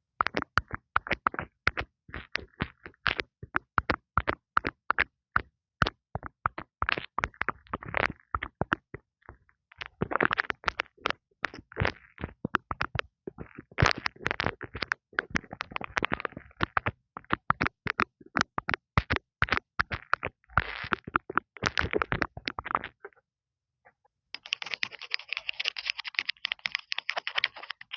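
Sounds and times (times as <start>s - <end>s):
fingers tapping on microphone: 0.2s - 23.2s, 24.4s - 27.9s
scratching on microphone: 9.8s - 23.2s, 24.4s - 27.9s.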